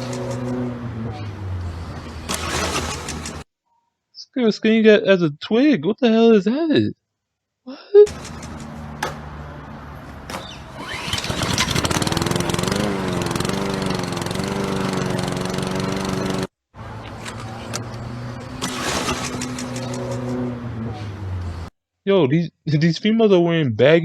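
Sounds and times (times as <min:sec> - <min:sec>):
lawnmower engine idling and revving: 0:00.0 - 0:03.5, 0:08.1 - 0:21.7.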